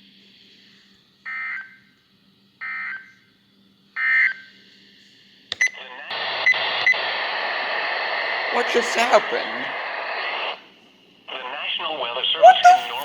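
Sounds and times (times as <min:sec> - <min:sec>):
loud radio hiss: 0:06.1 - 0:10.7.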